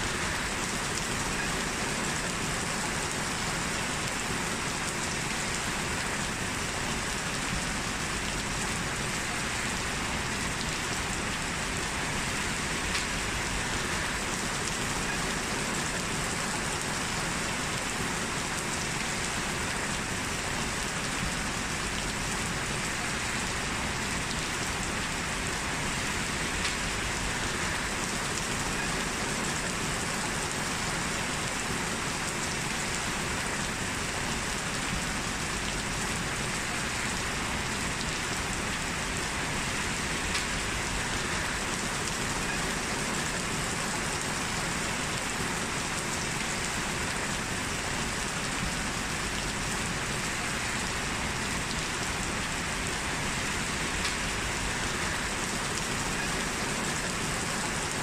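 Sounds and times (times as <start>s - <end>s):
steady rain hiss: 0.0s - 58.0s
faint raindrop ticks: 11.8s - 20.0s, 25.6s - 31.2s, 39.8s - 44.6s, 53.9s - 57.3s.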